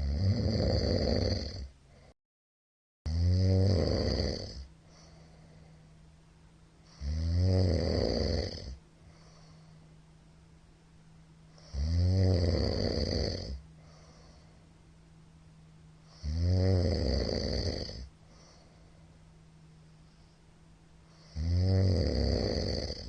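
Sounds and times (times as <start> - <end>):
man snoring loudly: 0.0 - 1.7, 3.1 - 4.7, 6.9 - 8.8, 11.6 - 13.6, 16.1 - 18.1, 21.1 - 23.0
soft breathing: 4.6 - 6.1, 9.0 - 10.1, 13.6 - 14.8, 18.0 - 21.4.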